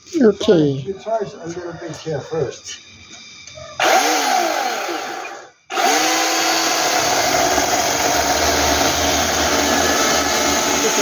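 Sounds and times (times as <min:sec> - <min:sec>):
electric chainsaw running: 0:03.8 - 0:11.0.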